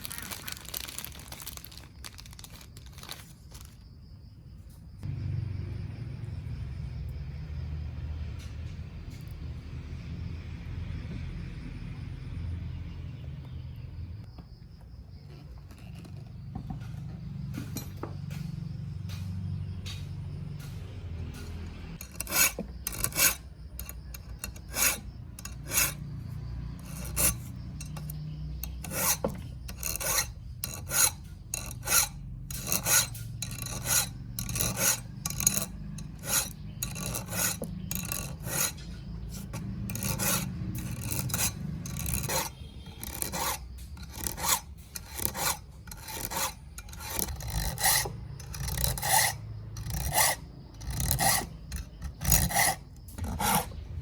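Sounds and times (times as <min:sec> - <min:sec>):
hand file scraping: 0:21.4 - 0:54.0.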